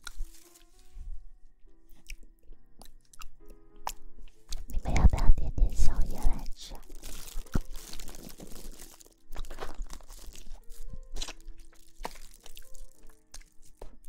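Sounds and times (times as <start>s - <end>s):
crunching and crackling: 0.0s - 0.8s, 1.9s - 14.0s.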